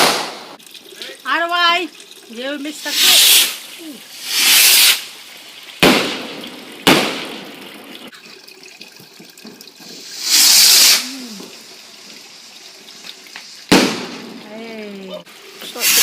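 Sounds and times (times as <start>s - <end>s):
firework bangs: 0.0s - 0.6s, 4.2s - 5.1s, 5.8s - 7.7s, 13.7s - 14.5s
firework hissing whoosh: 2.8s - 5.1s, 10.0s - 11.4s, 15.6s - 16.0s.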